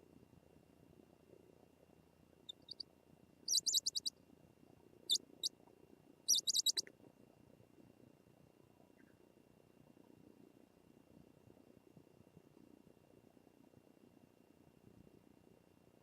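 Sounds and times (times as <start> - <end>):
bird chirping: 2.5 - 2.9, 3.5 - 4.1, 5.1 - 5.5, 6.3 - 6.9.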